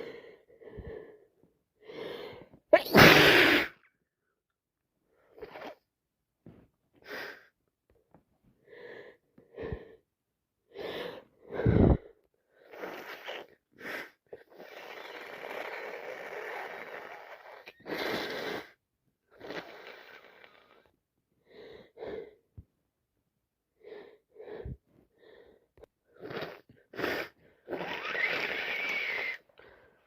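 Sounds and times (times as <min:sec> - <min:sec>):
woman sneezing: 0:02.8 - 0:03.8.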